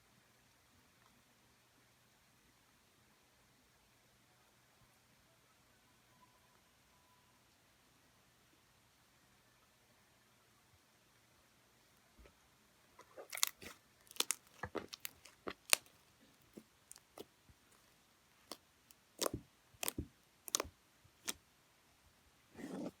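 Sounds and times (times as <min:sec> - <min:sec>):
slime popping and crackling: 0:13.2 - 0:21.4.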